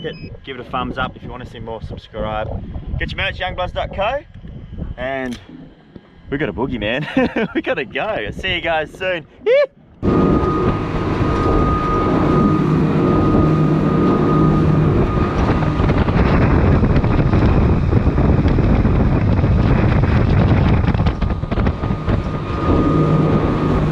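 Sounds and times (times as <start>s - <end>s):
motorboat engine drone: 0.0s - 23.9s
wind buffeting microphone: 0.0s - 23.9s
water rushing past hull: 7.6s - 23.9s.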